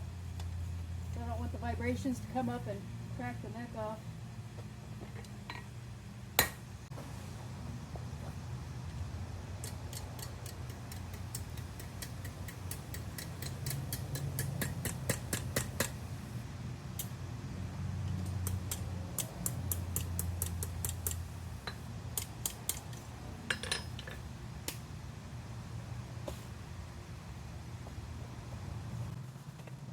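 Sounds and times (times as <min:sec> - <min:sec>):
steady low hum: 0:00.0 - 0:29.9
hammer tapping steel bar: 0:09.6 - 0:16.0, 0:18.2 - 0:23.9.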